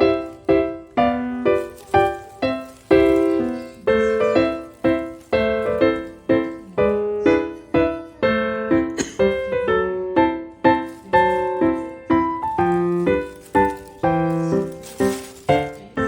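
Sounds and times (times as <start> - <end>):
light piano melody: 0.0 - 16.0.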